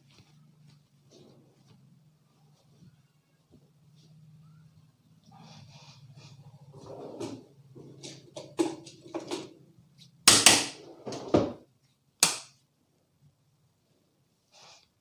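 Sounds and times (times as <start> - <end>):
hands slapping head: 12.2 - 12.6.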